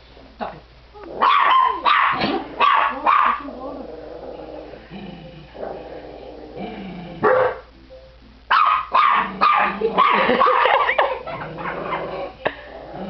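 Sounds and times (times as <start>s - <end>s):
dog growling: 1.0s - 7.5s, 9.2s - 13.0s
dogs barking and yapping: 1.2s - 3.5s, 7.2s - 7.7s, 8.5s - 12.0s.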